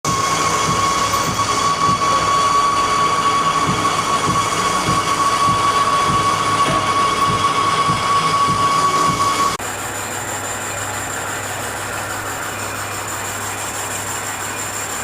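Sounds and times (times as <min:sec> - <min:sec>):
low irregular thumps: 0:00.1 - 0:09.6
high electric motor whine: 0:00.1 - 0:15.0.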